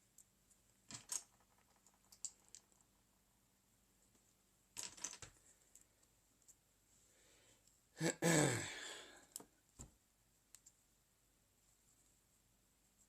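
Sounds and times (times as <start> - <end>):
person sighing: 8.0 - 9.3.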